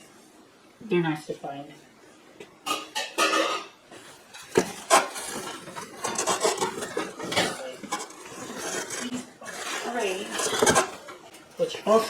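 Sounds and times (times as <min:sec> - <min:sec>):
metal trays scraping: 0:02.6 - 0:12.0.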